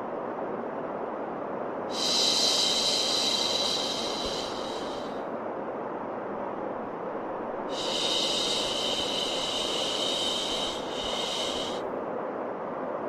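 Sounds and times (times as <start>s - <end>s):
steady low white noise: 0.0s - 13.0s
shushing sound: 2.0s - 5.2s.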